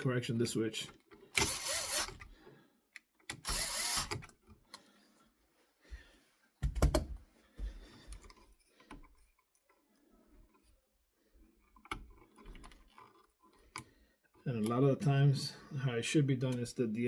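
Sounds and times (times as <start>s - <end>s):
screwdriver ratcheting: 1.0s - 2.3s, 3.0s - 4.6s.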